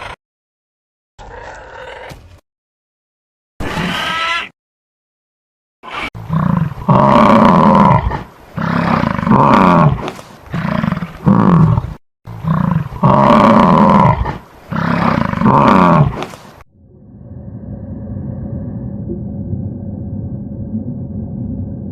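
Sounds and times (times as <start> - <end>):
large animal roaring: 6.2 - 16.3
steady hum: 16.9 - 21.9.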